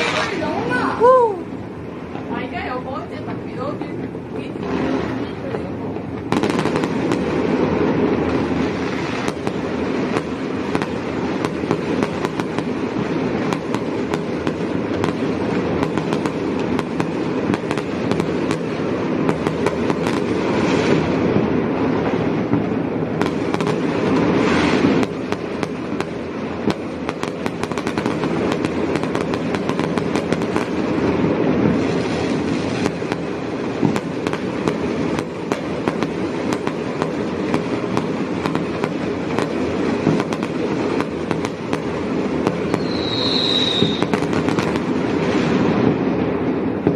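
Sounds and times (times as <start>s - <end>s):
firecrackers crackling: 0.0s - 46.9s
fireworks hissing: 0.0s - 46.9s.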